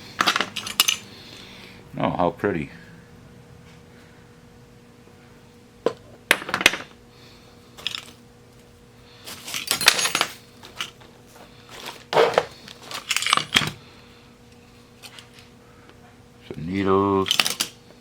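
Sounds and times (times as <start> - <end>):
small metal parts clinking: 0.2 - 1.1, 7.8 - 8.2, 9.3 - 11.0, 11.8 - 13.8, 17.2 - 17.8.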